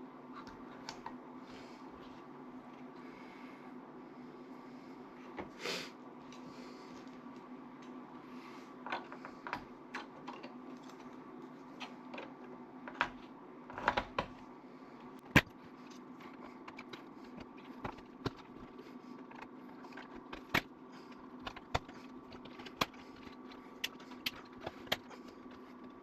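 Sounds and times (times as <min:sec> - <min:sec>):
steady low hum: 0:00.0 - 0:26.0
parts being handled: 0:15.2 - 0:26.0.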